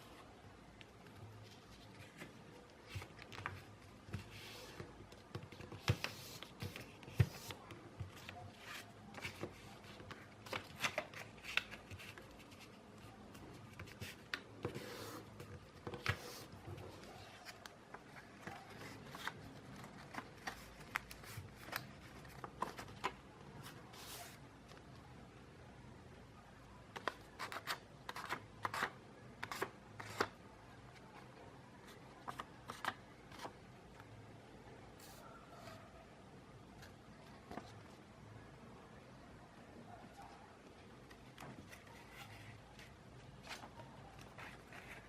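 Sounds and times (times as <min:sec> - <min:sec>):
paper rustling and crinkling: 0:05.5 - 0:24.4.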